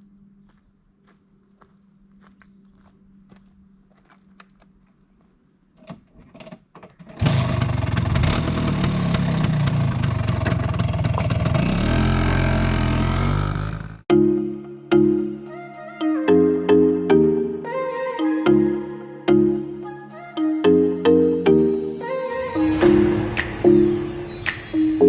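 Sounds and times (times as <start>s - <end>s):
scooter engine running and revving: 7.2s - 14.0s.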